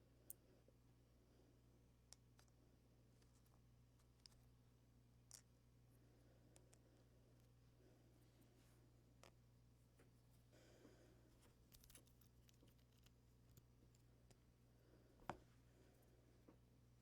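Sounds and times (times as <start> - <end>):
small plastic parts clicking: 11.6 - 14.4.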